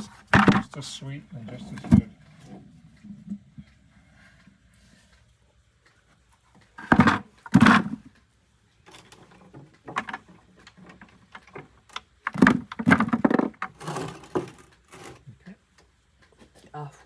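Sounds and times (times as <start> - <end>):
loud thumps: 0.0 - 0.8.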